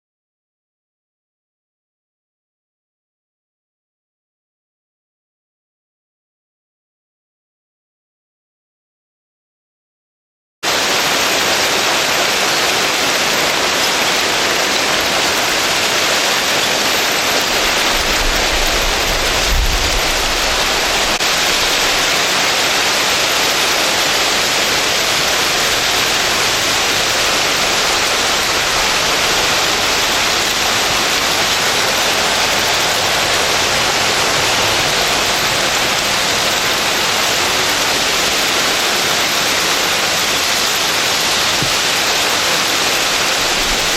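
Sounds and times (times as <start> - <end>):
hail falling: 10.6 - 43.9.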